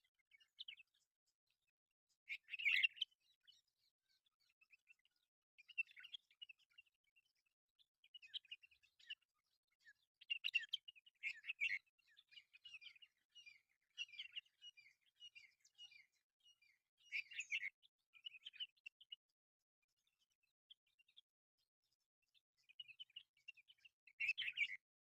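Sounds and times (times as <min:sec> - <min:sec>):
birds chirping: 0:02.1 - 0:06.9, 0:08.1 - 0:19.2, 0:22.6 - 0:24.9.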